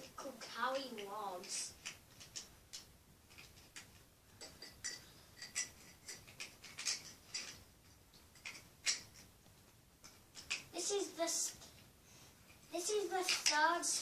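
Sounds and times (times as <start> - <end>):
plastic toys clicking and tapping: 0.4 - 9.3, 10.0 - 10.7, 12.5 - 14.0.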